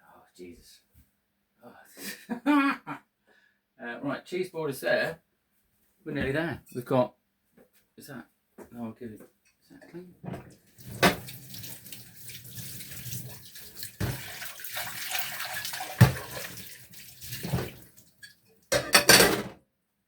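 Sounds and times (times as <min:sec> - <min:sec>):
items knocking against sink: 0:10.2 - 0:11.5, 0:13.8 - 0:16.6, 0:17.3 - 0:17.9, 0:18.7 - 0:19.6
tap running into sink: 0:10.3 - 0:18.0.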